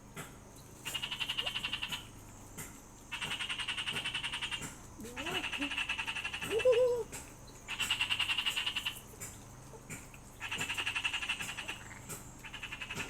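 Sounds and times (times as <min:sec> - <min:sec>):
frog trilling: 0:00.8 - 0:02.1, 0:03.1 - 0:07.1, 0:07.7 - 0:09.0, 0:10.4 - 0:13.0.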